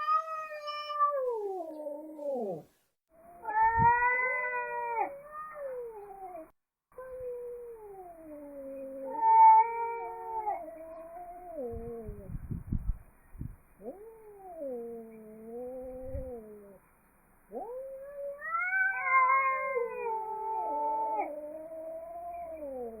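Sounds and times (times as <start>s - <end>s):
cats yowling: 0.0s - 2.6s, 3.2s - 12.2s, 17.5s - 23.0s.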